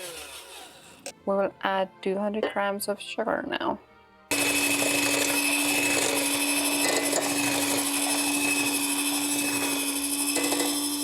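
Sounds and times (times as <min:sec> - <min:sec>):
electric mixer whisking: 0:00.0 - 0:01.1, 0:04.3 - 0:11.0.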